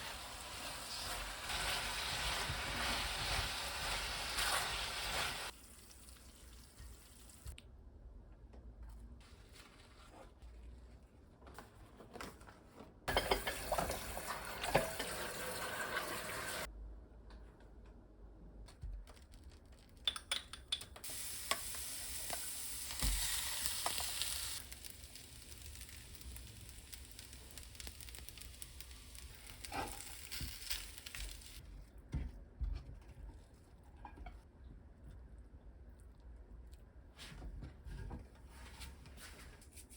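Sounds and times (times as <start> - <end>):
food sizzling in a frying pan: 0.0 - 5.6, 13.1 - 16.7, 21.0 - 31.6.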